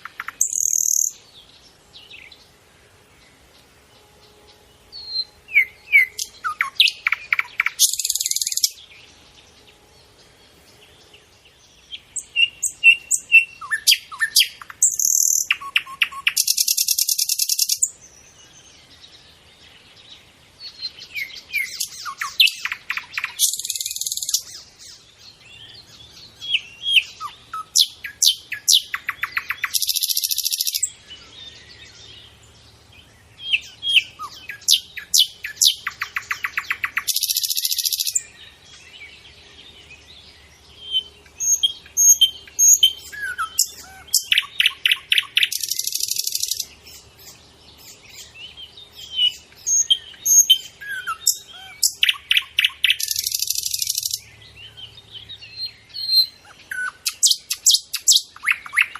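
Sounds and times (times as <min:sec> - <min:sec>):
nightingale singing: 0:00.0 - 0:58.9.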